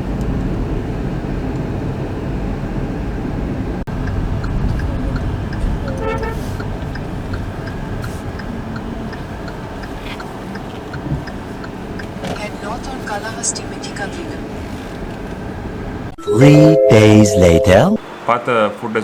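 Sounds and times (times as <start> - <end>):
car engine and road noise: 0.0 - 16.2, 17.7 - 19.0
car horn toot: 5.8 - 6.6.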